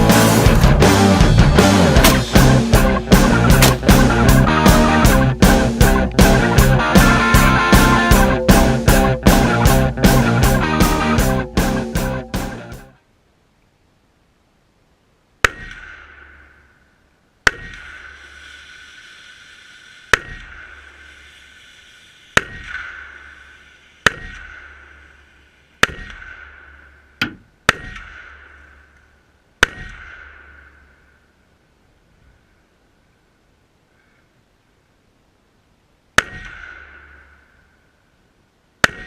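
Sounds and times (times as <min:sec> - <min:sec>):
rifle shots: 0:01.7 - 0:05.1
ringing steel target: 0:24.1 - 0:25.2, 0:25.8 - 0:28.9, 0:29.6 - 0:31.1, 0:36.2 - 0:37.5.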